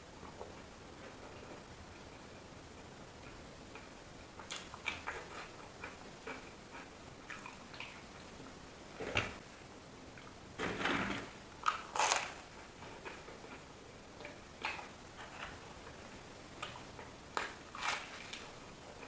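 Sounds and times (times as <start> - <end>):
person chewing: 3.2 - 8.3, 11.6 - 19.0.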